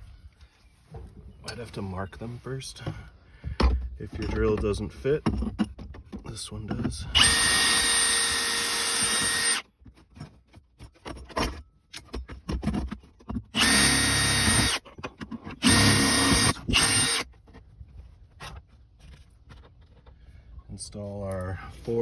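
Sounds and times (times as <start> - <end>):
power drill whining: 7.1 - 9.7, 13.5 - 14.9, 15.6 - 17.3
clicks and handling noises: 14.8 - 15.6, 17.2 - 20.2.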